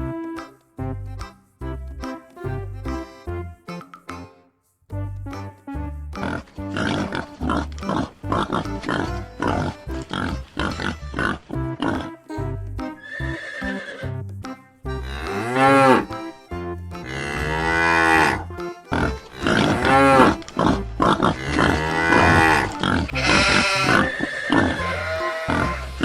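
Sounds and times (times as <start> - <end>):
background music: 0.0 - 26.0
cow mooing: 6.2 - 12.2, 15.1 - 16.1, 17.1 - 26.0.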